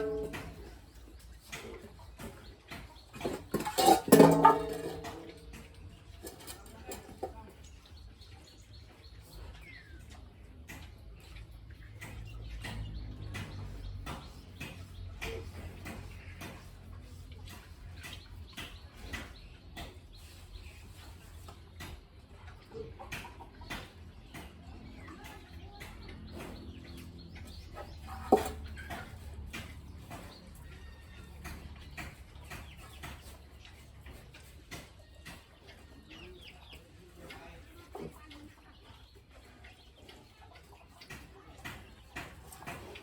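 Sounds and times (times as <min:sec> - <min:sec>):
scattered clicks and knocks: 0:10.6 - 0:16.8.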